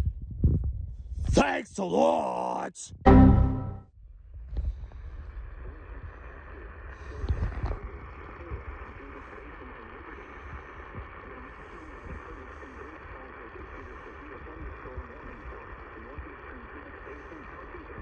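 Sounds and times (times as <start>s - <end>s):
steady low rumble: 2.9s - 18.0s
crackly radio static: 5.6s - 18.0s.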